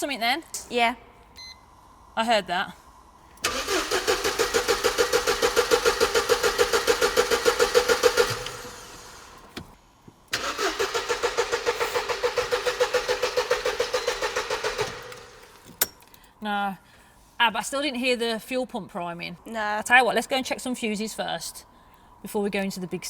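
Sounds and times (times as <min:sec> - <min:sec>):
starter whine: 0:03.3 - 0:16.2
starter cranking car engine: 0:03.4 - 0:16.2.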